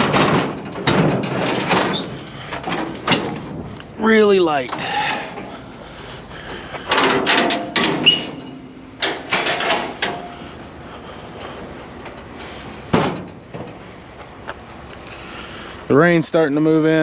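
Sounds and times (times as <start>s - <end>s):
metal scrap clanking and rattling: 0.0s - 5.6s, 6.5s - 10.7s, 11.3s - 13.8s.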